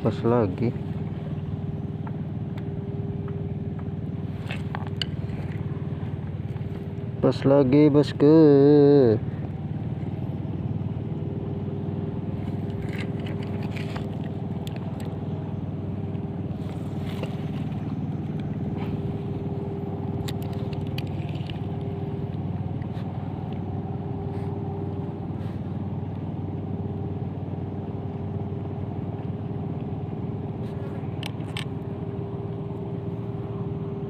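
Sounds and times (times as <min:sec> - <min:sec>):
low engine hum: 0:00.0 - 0:34.0
light clicks and scrapes: 0:04.3 - 0:06.9, 0:12.4 - 0:15.2, 0:16.5 - 0:19.1, 0:20.2 - 0:23.6, 0:30.6 - 0:31.8.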